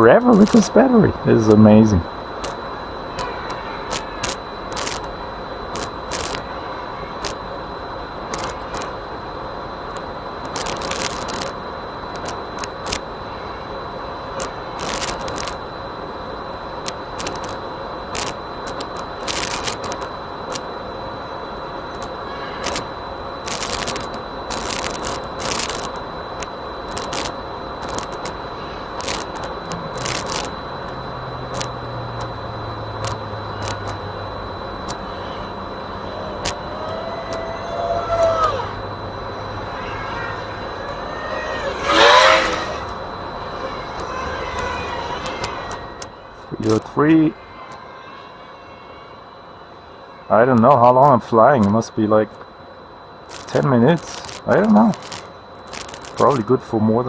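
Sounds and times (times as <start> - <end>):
low hum: 0.0 - 47.4
steady hiss: 0.0 - 47.4, 49.6 - 57.0
high-pitched whine: 0.0 - 57.0
sharp crackles: 0.2 - 6.5, 7.2 - 7.4, 8.2 - 9.1, 9.8 - 13.1, 14.4 - 15.7, 16.8 - 20.7, 21.8 - 34.1, 34.8 - 38.6, 53.2 - 56.5.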